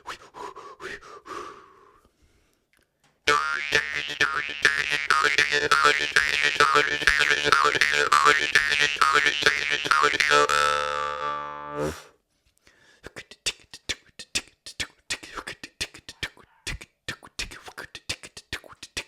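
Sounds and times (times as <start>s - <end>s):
jaw harp drone: 3.3s - 12.0s
mouth tongue clicks: 13.1s - 19.0s.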